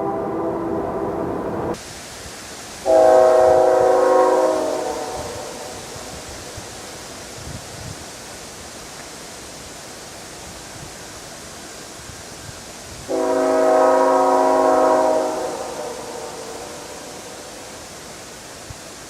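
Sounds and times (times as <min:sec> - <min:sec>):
locomotive air horn chord: 0:00.0 - 0:01.8, 0:02.8 - 0:06.2, 0:13.1 - 0:17.9
steady background hiss: 0:00.0 - 0:19.0.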